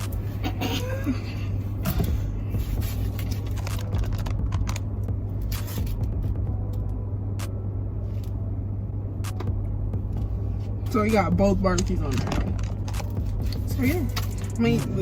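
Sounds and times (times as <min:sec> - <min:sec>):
car cabin engine hum: 0:00.0 - 0:15.0.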